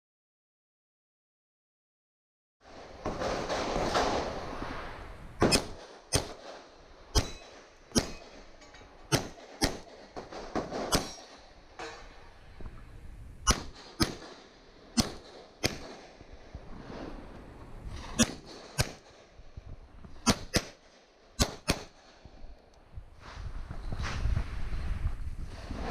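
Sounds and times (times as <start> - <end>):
gunshots: 2.7 - 12.3, 13.4 - 19.5, 20.1 - 22.5.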